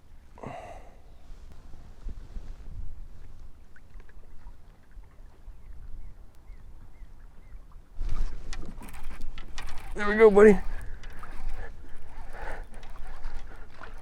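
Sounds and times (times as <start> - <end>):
water moving around kayak: 0.0 - 14.0
wind rumbling on microphone: 1.0 - 14.0
splashing and clatter: 8.0 - 14.0.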